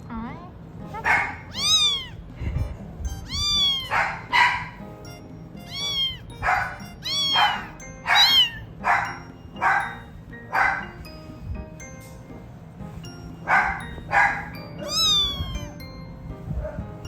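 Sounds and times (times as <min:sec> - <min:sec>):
kitten meowing: 0:01.4 - 0:02.3, 0:03.1 - 0:04.3, 0:05.6 - 0:08.7, 0:14.8 - 0:15.8.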